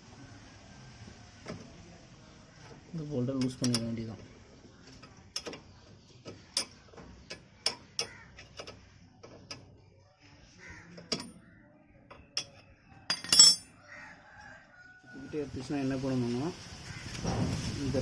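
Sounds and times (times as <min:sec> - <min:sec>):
ring spanner clicking on bolt: 0:05.0 - 0:08.8.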